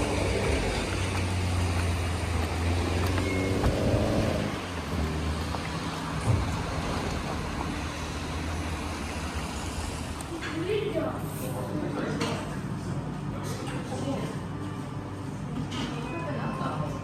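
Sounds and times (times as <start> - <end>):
engine hum: 0.0 - 11.5
road noise: 0.0 - 15.9.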